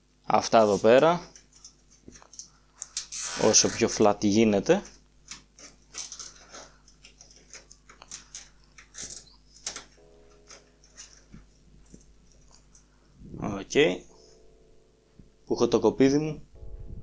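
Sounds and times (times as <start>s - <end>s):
cables rustling: 0.6s - 13.5s.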